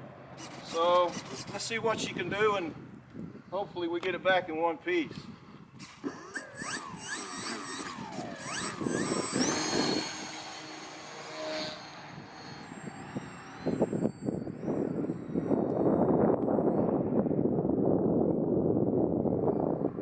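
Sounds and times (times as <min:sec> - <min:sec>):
electric model plane motor whining: 0:00.4 - 0:02.3, 0:05.8 - 0:17.2
wind buffeting microphone: 0:00.4 - 0:20.0.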